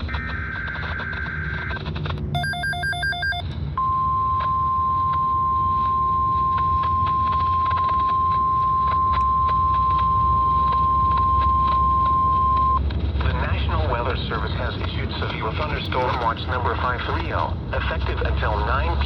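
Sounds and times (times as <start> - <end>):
radio static and crackle: 0.0 - 3.4, 4.2 - 19.0
short electronic beeps: 2.4 - 12.8
radio alert tone: 2.4 - 19.0.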